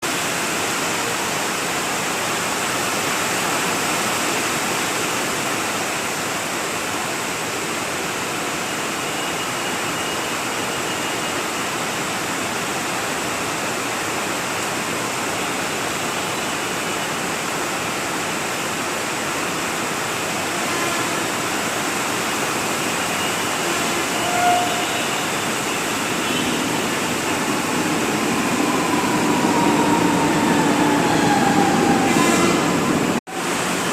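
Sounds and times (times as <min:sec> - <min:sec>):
heavy rain falling: 0:00.1 - 0:33.9
short tone: 0:23.0 - 0:27.4.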